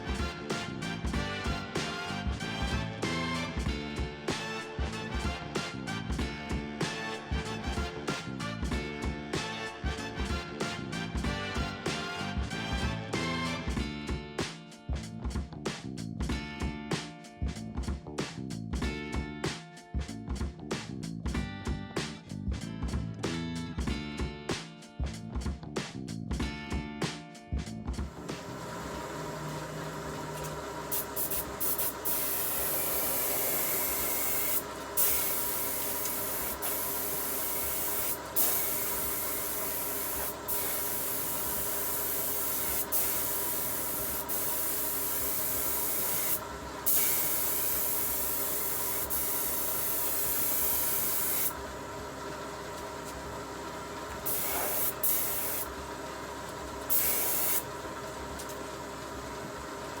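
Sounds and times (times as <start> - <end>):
steady hum: 28.1 - 60.0
bodywork tool hissing: 30.9 - 51.5, 54.2 - 55.7, 56.9 - 57.6.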